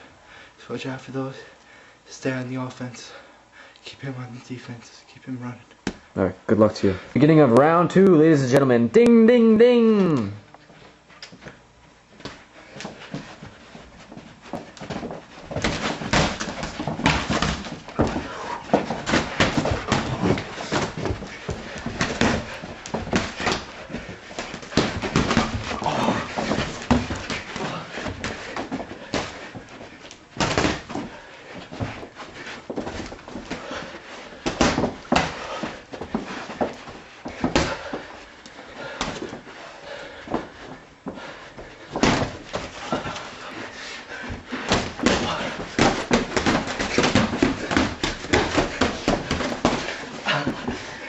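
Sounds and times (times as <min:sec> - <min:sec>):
bodies bumping: 0:12.2 - 0:51.0
boxing glove punches thudding: 0:14.8 - 0:29.7, 0:34.4 - 0:38.0, 0:44.6 - 0:50.8.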